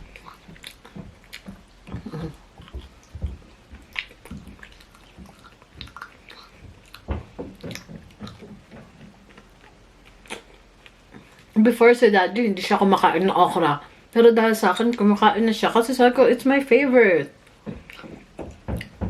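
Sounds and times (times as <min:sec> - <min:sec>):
person chewing with wet mouth sounds: 0:00.0 - 0:11.6, 0:17.4 - 0:19.0.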